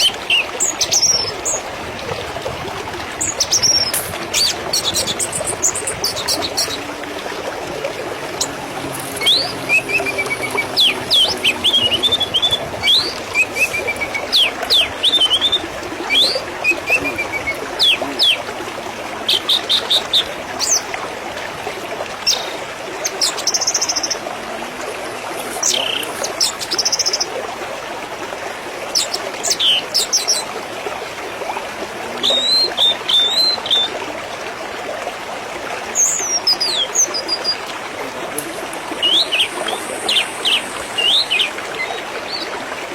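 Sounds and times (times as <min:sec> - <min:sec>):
flowing water rushing: 0:00.0 - 0:42.9
small birds chirping: 0:03.2 - 0:18.5, 0:38.4 - 0:42.6.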